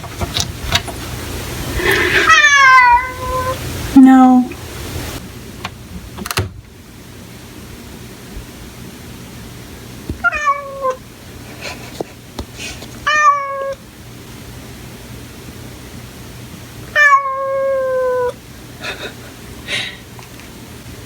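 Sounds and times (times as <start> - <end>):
cat meowing: 2.2 - 3.6, 10.2 - 11.0, 13.1 - 13.8, 17.0 - 18.4.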